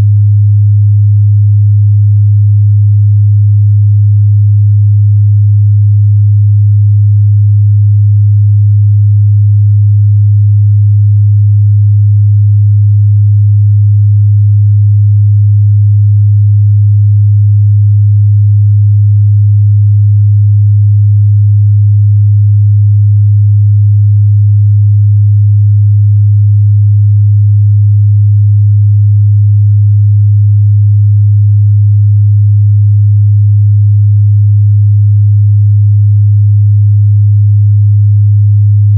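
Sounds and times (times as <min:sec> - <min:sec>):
low sine test tone: 0:00.0 - 0:38.9.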